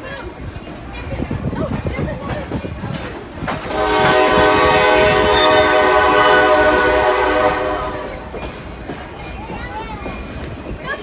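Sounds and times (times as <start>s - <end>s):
locomotive air horn blast: 3.7s - 8.6s.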